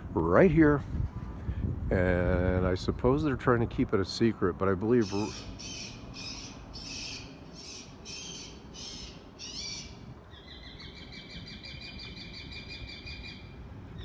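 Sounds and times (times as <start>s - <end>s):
young owls screeching: 5.0s - 14.0s.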